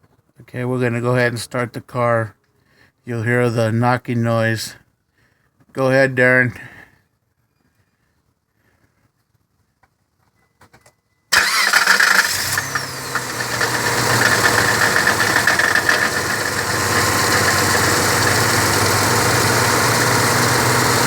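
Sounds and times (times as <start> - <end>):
car engine starting and idling: 11.3 - 21.0
engine knocking: 11.4 - 21.0.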